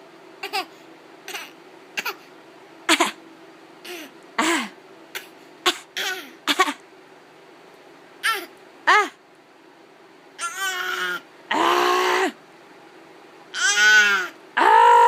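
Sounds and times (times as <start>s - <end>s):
baby fake coughing: 1.3s - 2.3s, 2.9s - 3.2s, 3.9s - 6.8s, 8.2s - 8.5s.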